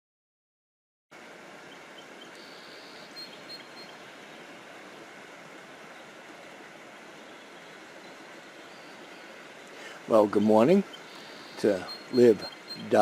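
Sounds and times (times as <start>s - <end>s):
rain hissing: 1.2s - 13.0s
high bird chirps: 2.0s - 4.0s, 10.4s - 13.0s.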